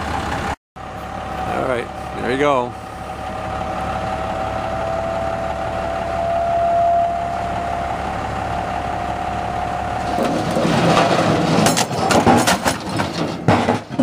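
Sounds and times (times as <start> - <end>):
truck engine running: 0.0 - 14.0
hydraulic hoist whine: 0.9 - 10.7.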